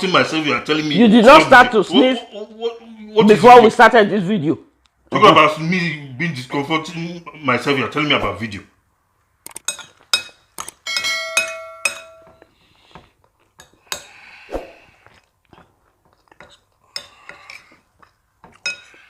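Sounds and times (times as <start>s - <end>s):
cutlery clinking against plates: 9.6s - 12.5s, 18.4s - 19.0s
chewing: 14.9s - 19.0s.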